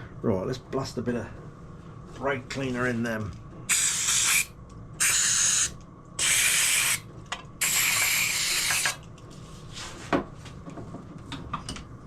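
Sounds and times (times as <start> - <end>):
aerosol spray hissing: 3.7 - 7.0.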